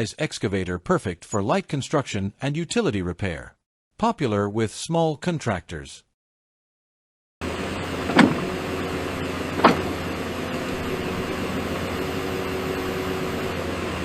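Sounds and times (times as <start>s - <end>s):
engine running: 7.4s - 14.0s.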